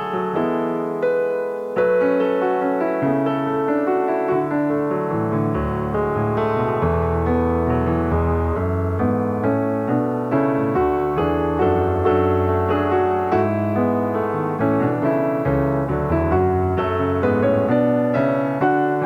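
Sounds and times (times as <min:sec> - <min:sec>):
piano music: 0:00.0 - 0:19.0.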